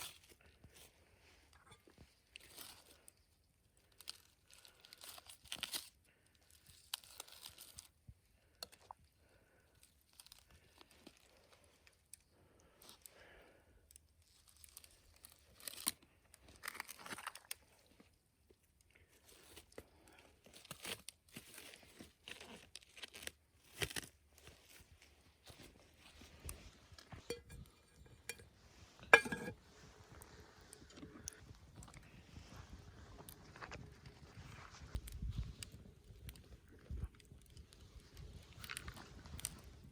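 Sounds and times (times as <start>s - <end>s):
person eating with crunching: 3.8s - 13.6s, 14.2s - 18.0s, 18.9s - 28.5s.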